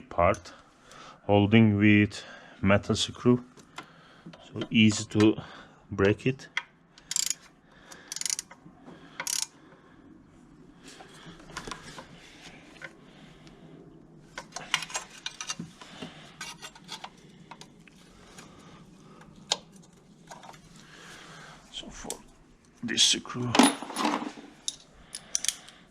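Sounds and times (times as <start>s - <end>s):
socket ratchet clicking: 7.0s - 7.5s, 8.1s - 8.6s, 9.2s - 9.5s, 24.7s - 25.8s
tool clatter: 23.5s - 25.7s.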